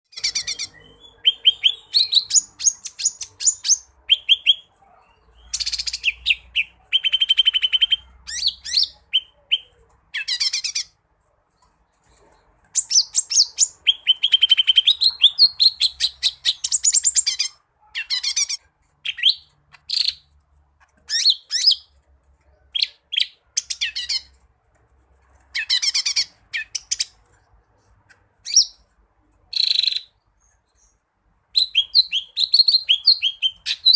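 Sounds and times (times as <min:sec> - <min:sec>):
bird song with trills: 0:00.1 - 0:11.0, 0:12.8 - 0:20.3, 0:29.5 - 0:33.9.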